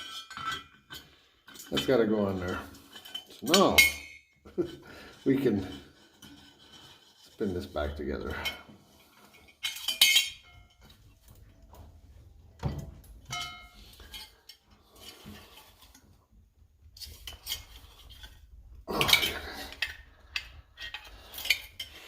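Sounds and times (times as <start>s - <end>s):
metal stove parts clinking: 0.0s - 6.9s, 8.2s - 11.8s, 12.5s - 16.0s, 16.8s - 22.0s
metal parts scraping: 17.0s - 22.0s.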